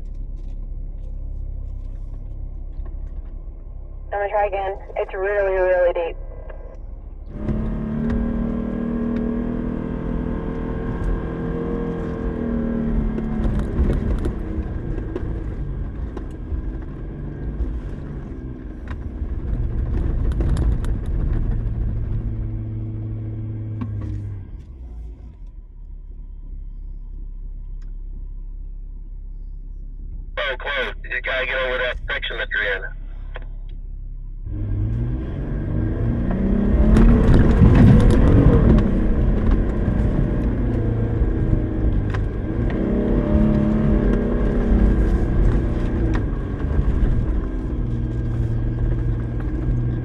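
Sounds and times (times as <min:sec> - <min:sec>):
engine revving under load: 0:05.7 - 0:16.0, 0:34.4 - 0:50.0.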